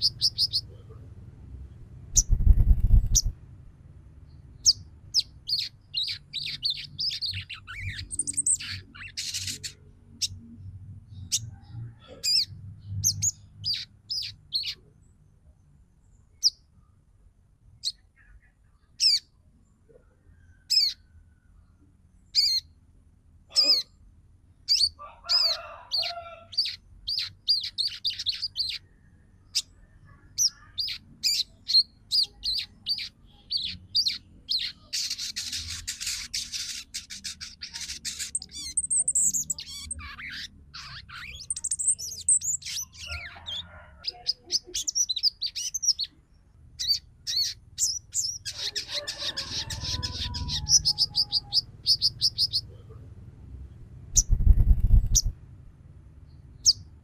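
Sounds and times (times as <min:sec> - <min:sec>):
bird chirping high calls: 0:00.0 - 0:00.8, 0:02.2 - 0:03.4, 0:04.6 - 0:10.4, 0:11.1 - 0:14.9, 0:17.8 - 0:19.3, 0:20.5 - 0:21.1, 0:22.3 - 0:22.7, 0:24.6 - 0:28.9, 0:29.5 - 0:46.2, 0:46.8 - 0:52.8, 0:54.2 - 0:55.3
faint low hum: 0:00.0 - 0:24.8, 0:50.0 - 0:57.0.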